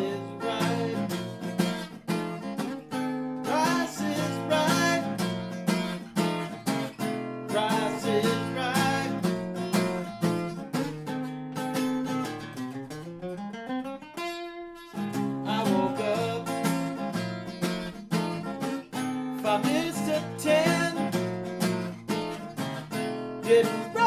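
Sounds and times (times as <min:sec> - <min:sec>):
man singing: 0:00.0 - 0:01.6, 0:03.4 - 0:05.5, 0:07.5 - 0:10.0, 0:15.4 - 0:17.0, 0:19.4 - 0:21.4, 0:23.4 - 0:24.0
acoustic guitar strumming: 0:00.0 - 0:24.0.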